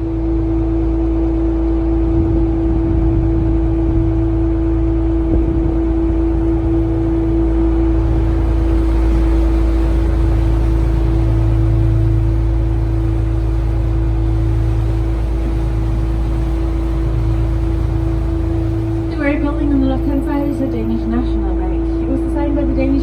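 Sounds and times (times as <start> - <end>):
boat engine rumbling: 0.0 - 23.0.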